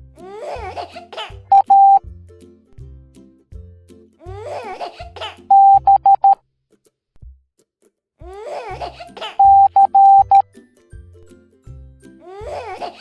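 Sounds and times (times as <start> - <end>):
soft backing music: 0.0 - 6.3, 8.2 - 13.0
morse code beeps: 1.5 - 2.0, 5.5 - 6.4, 9.4 - 10.4
cartoon giggle: 8.4 - 9.7, 12.3 - 13.0.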